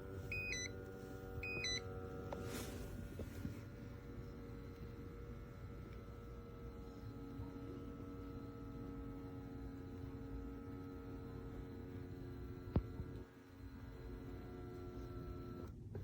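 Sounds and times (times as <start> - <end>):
foot massager motor hum: 0.0 - 16.0.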